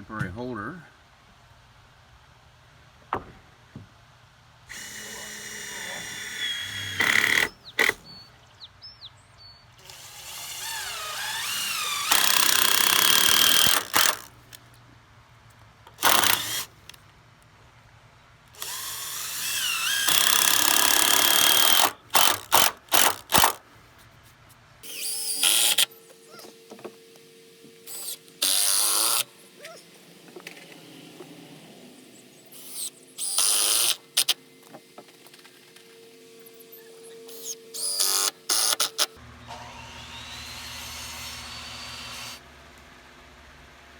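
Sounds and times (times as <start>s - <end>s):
power drill driving screws: 4.7s - 8.2s, 9.8s - 14.6s, 16.0s - 17.0s, 18.6s - 23.6s, 24.8s - 42.4s.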